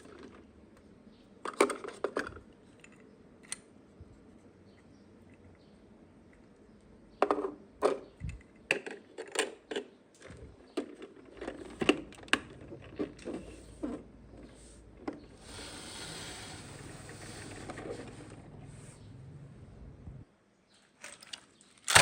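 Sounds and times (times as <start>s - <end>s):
steady hiss: 15.4s - 17.8s
plastic toy parts clicking: 21.0s - 22.0s.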